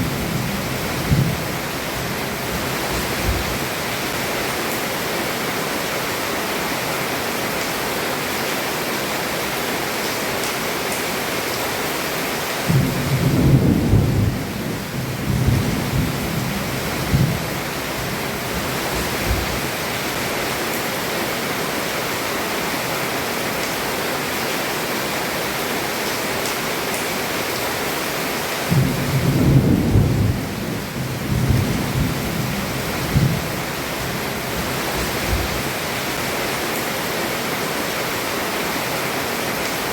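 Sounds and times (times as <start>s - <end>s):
heavy rain on a roof: 0.0s - 39.9s
thunder rumbling: 2.4s - 3.6s, 12.7s - 17.4s, 28.7s - 35.7s.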